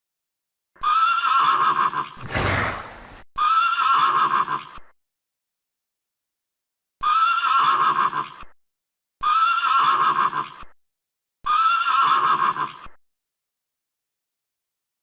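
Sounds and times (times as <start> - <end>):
horse neighing: 0.8 - 4.8, 7.0 - 8.4, 9.2 - 10.6, 11.5 - 13.0.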